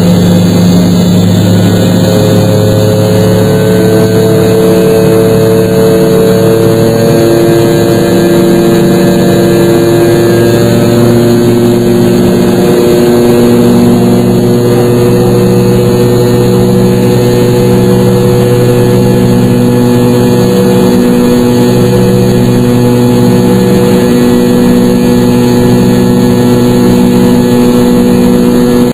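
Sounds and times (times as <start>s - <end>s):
jet engines droning in cabin: 0.0s - 28.9s.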